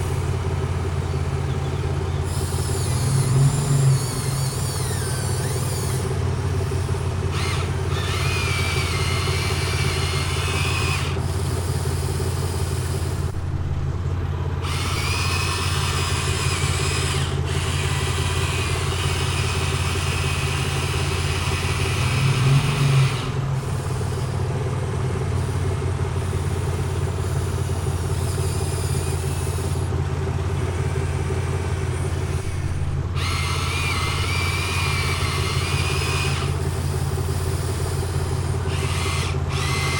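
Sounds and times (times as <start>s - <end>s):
excavator engine running: 0.0s - 39.9s
hydraulic whine: 0.0s - 39.9s.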